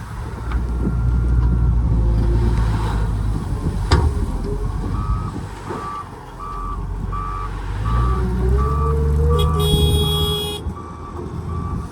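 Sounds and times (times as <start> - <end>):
diesel engine revving: 0.0 - 11.9
reversing alarm beeping: 4.6 - 11.9.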